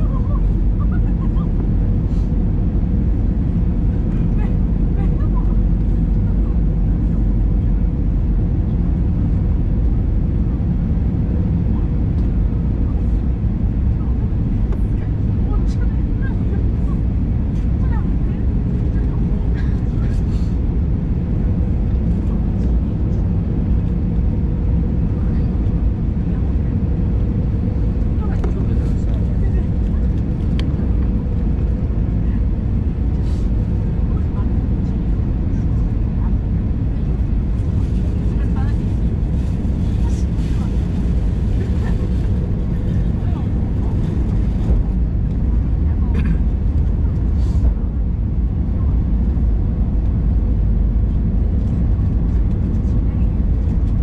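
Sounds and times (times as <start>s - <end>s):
airliner engines rumbling: 0.0s - 54.0s.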